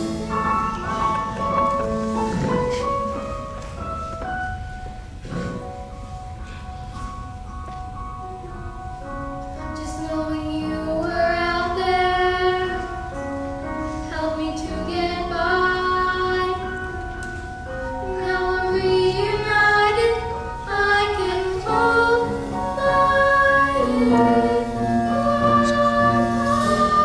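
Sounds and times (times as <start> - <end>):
instrumental accompaniment: 0.0 - 27.0
voices singing together: 18.3 - 27.0.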